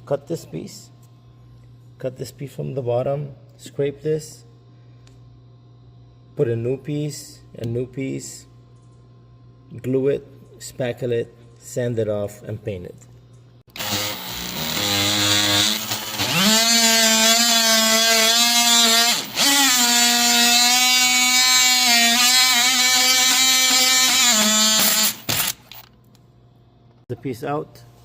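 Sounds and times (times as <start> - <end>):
power tool cutting wood: 13.7 - 25.8.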